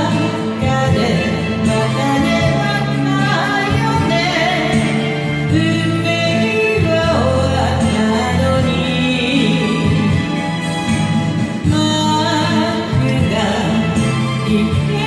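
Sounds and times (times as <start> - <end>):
backing track with bass: 0.0 - 15.0
person singing long notes: 11.7 - 15.0.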